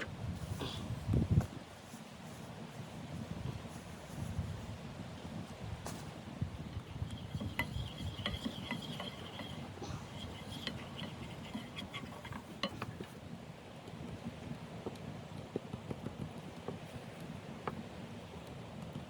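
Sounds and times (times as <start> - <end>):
low wind rumble: 0.0 - 1.9.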